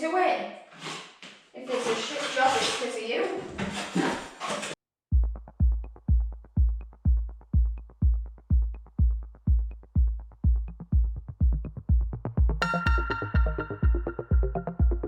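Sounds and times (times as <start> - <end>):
kick drum beat: 5.1 - 15.0
synth chord: 12.6 - 15.0.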